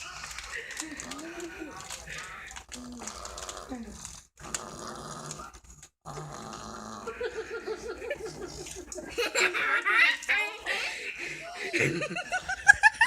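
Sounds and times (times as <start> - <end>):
snoring with quick snorts: 2.8 - 7.2.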